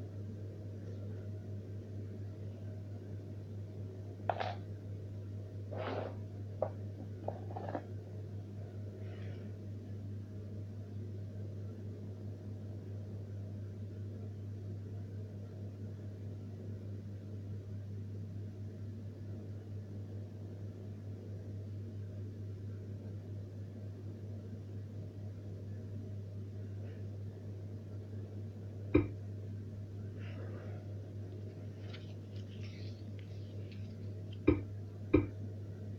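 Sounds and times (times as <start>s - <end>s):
low mechanical hum: 0.0s - 35.9s
faint short scrape: 5.7s - 6.2s.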